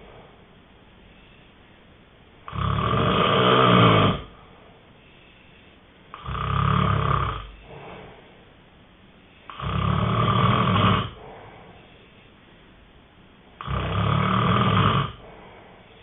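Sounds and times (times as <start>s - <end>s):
loud snoring: 2.5s - 4.4s, 6.1s - 8.1s, 9.5s - 11.4s, 13.6s - 15.3s
soft breath out: 7.6s - 8.5s, 11.2s - 12.6s, 15.2s - 16.0s.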